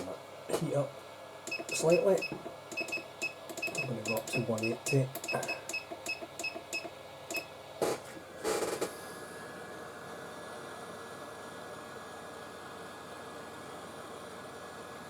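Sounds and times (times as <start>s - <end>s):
rework station beep: 1.5s - 7.5s.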